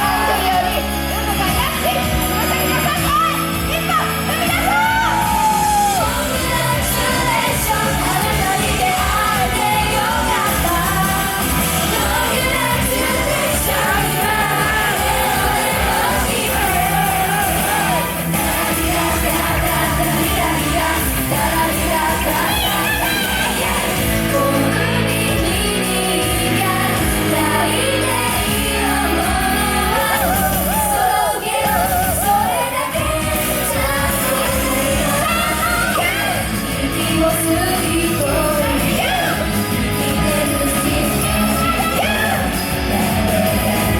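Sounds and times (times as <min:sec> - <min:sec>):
band backing track: 0:00.0 - 0:43.9
group singing pop song: 0:00.0 - 0:43.9
audience shouting: 0:02.8 - 0:24.0, 0:28.6 - 0:33.2, 0:40.3 - 0:43.9.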